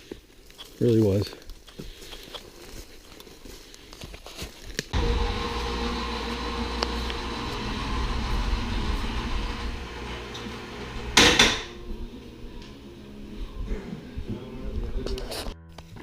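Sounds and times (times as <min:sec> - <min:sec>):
loud burst of noise: 0:05.0 - 0:11.8
low mechanical hum: 0:05.0 - 0:14.8.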